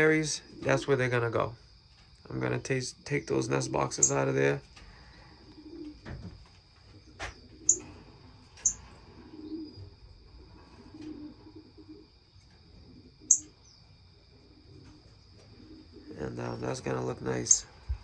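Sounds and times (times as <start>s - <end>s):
soft low bird calls: 3.1s - 6.0s, 6.9s - 12.2s, 12.8s - 18.0s
sharp high bird chirps: 4.0s - 4.2s, 7.7s - 7.9s, 8.6s - 8.9s, 13.2s - 13.8s, 17.4s - 17.7s.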